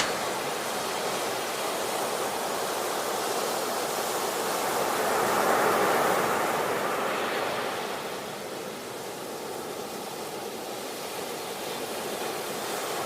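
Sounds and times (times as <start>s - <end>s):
steady rushing noise: 0.0s - 3.9s.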